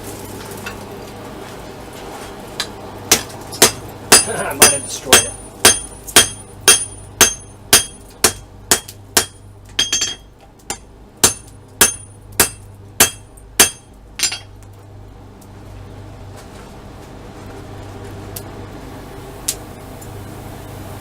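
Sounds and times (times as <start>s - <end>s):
hammer striking steel on anvil: 3.1s - 14.5s.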